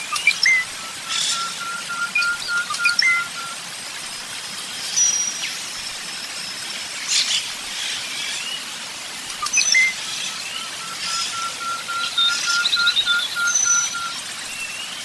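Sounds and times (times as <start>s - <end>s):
birds chirping and whistling: 0.0s - 3.6s, 9.4s - 15.0s.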